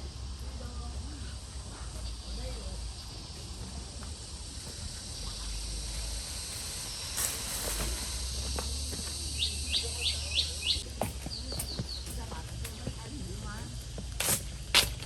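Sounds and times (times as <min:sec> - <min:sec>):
high-pitched insect drone: 0:00.0 - 0:14.7
rustling: 0:03.6 - 0:09.3.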